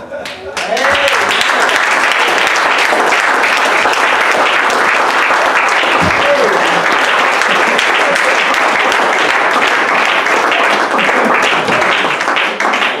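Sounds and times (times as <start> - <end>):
congregation applauding: 0.2 - 13.0.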